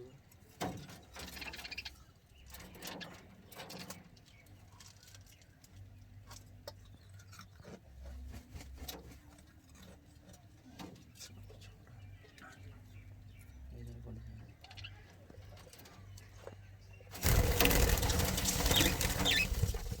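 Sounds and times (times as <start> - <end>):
budgerigars chirping: 1.3 - 2.0, 16.9 - 20.0.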